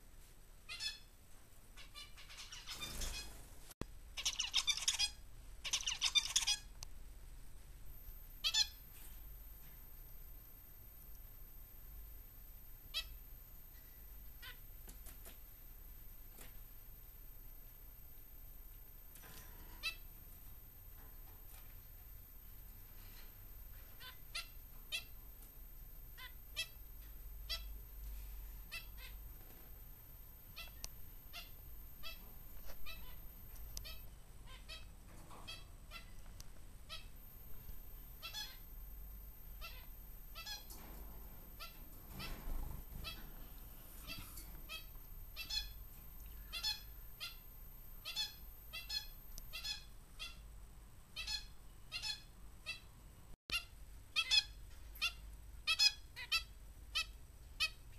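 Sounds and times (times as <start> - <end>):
finches chirping: 1.8 - 3.5, 4.2 - 6.8, 8.3 - 9.8, 12.8 - 14.8, 23.0 - 25.3, 26.1 - 29.8, 30.4 - 50.4.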